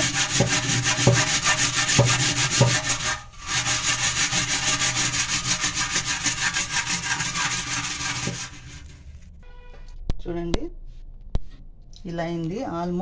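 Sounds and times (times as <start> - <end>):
scrubbing a stainless steel sink: 0.0 - 9.1.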